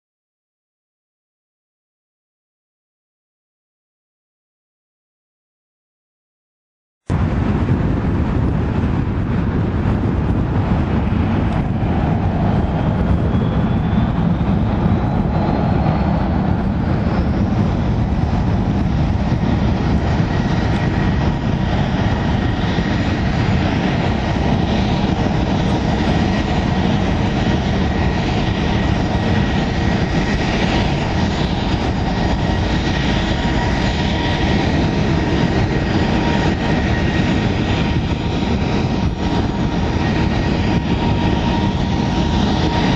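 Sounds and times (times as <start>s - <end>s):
engine whine: 7.1s - 42.9s
jet engines spooling up: 7.1s - 42.9s.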